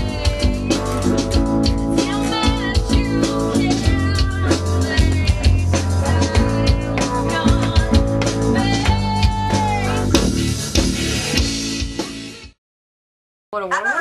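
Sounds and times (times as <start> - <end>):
person singing: 0.0 - 10.4
drum kit: 0.0 - 12.6
guitar: 0.0 - 12.6.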